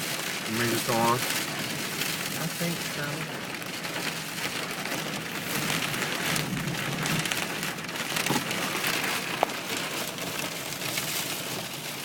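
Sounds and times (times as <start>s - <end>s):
rain on car roof: 0.0s - 12.0s.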